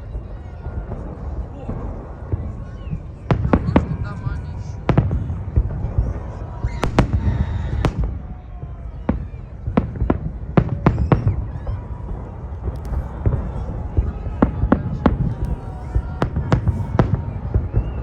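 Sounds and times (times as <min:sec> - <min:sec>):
fireworks bangs: 0:00.0 - 0:18.0.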